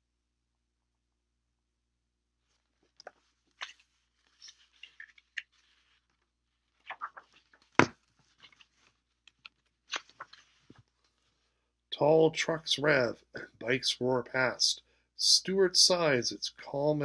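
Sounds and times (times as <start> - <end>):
book pages rustling: 2.4 - 11.6.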